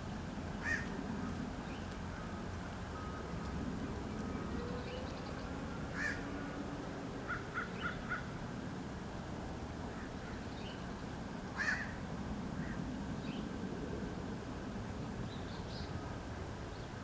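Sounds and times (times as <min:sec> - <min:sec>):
bird calls: 0:03.9 - 0:06.3, 0:07.3 - 0:08.3.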